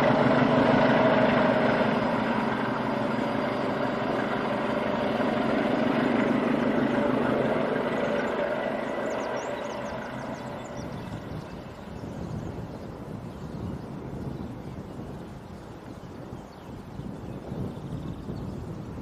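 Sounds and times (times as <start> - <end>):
diesel locomotive engine running: 0.0 - 15.1.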